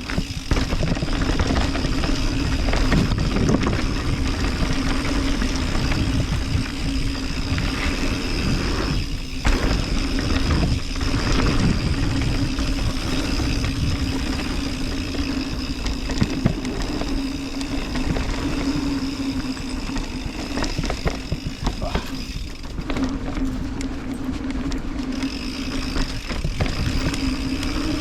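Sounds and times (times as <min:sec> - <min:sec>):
bike rattling over bumps: 0:00.0 - 0:28.0
wind and tyre rush: 0:00.0 - 0:28.0.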